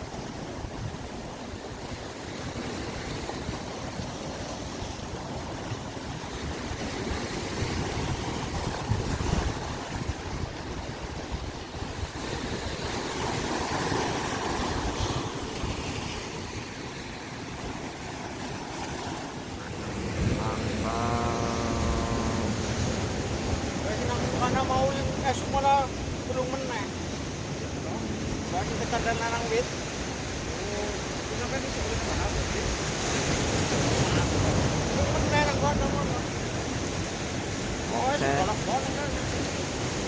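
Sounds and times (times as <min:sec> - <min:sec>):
ocean surf breaking: 0:00.0 - 0:40.0
wind buffeting microphone: 0:05.2 - 0:16.6.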